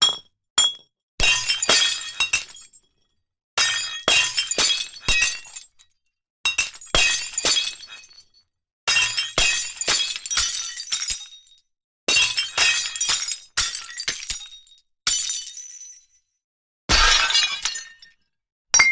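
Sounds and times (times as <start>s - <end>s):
glass breaking: 16.9s - 18.1s.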